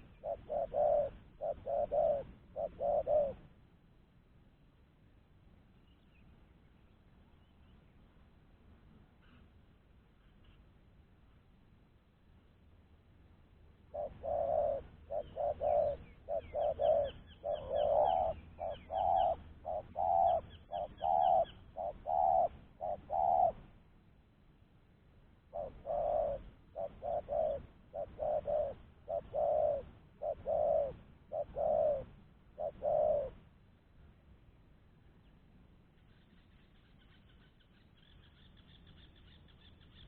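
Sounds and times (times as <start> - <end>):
dove cooing: 0.0 - 3.5, 13.8 - 23.7, 25.5 - 33.4
small bird chirps: 14.0 - 23.6, 36.0 - 40.0.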